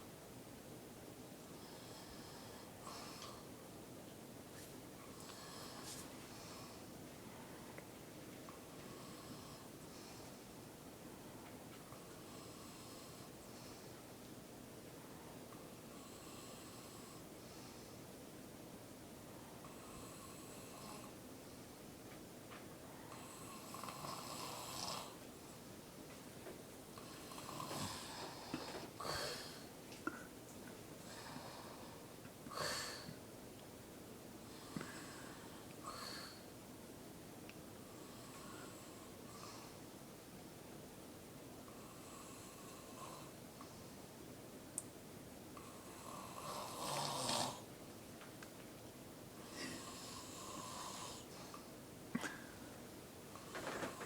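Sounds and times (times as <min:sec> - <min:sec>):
person snoring: 0:45.9 - 0:47.6.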